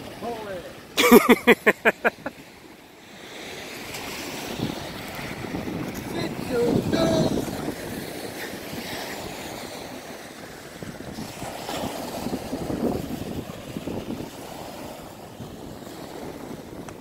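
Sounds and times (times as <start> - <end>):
surf washing onto rocks: 0.0 - 17.0
wind on microphone: 4.0 - 17.0.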